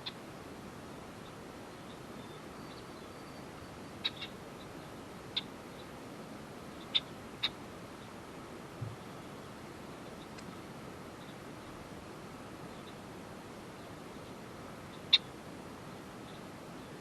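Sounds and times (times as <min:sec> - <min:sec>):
steady background hiss: 0:00.0 - 0:17.0
small birds chirping: 0:00.9 - 0:06.0, 0:06.6 - 0:08.2, 0:08.8 - 0:11.9, 0:12.6 - 0:15.4, 0:16.1 - 0:17.0.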